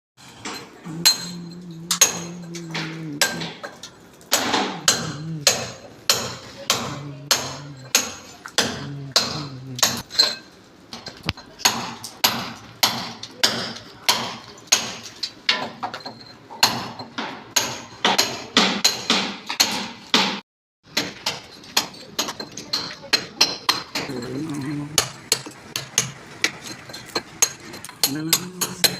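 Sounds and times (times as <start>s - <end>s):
hammer blows on metal: 0.8s - 3.7s, 4.3s - 10.0s.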